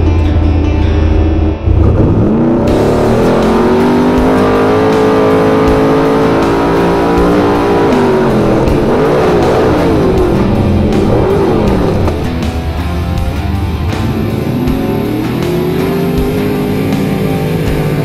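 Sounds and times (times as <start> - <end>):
rock music: 0.0 - 18.0
truck engine revving: 0.0 - 18.0.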